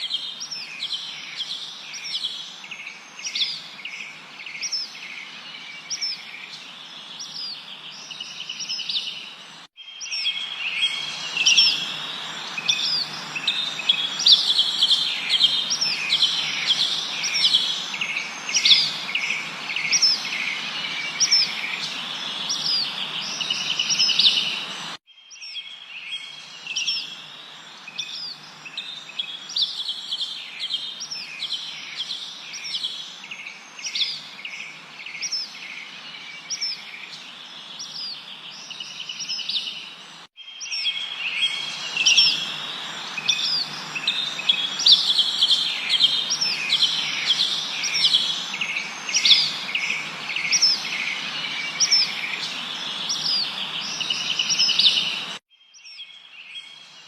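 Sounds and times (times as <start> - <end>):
songbirds chirping and trilling: 0.0 - 57.0
steady background hiss: 10.4 - 25.0, 41.0 - 55.4.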